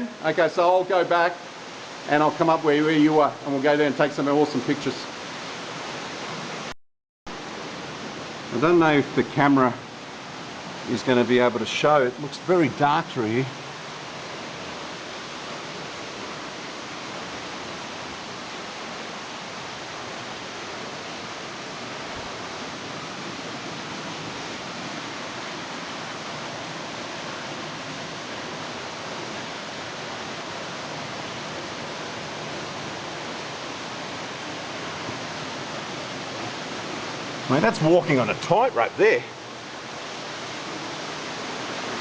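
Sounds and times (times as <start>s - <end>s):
waterfall hissing: 0.0s - 6.7s, 7.3s - 42.0s.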